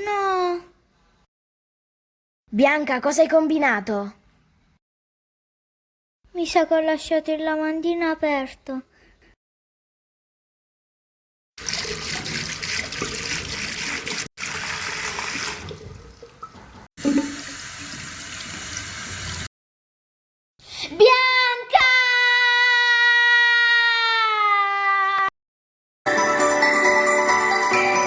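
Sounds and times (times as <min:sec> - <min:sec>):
water running from tap: 0:11.6 - 0:19.5.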